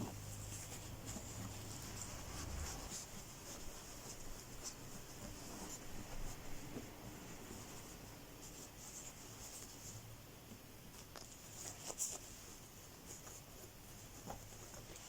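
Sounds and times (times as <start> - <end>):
cloth towel rustling: 0.0 - 10.0.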